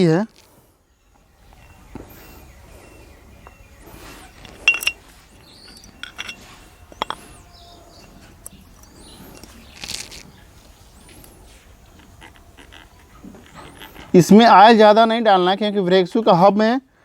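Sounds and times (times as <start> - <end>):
metallic clinks and taps: 4.6 - 5.0, 5.6 - 7.3.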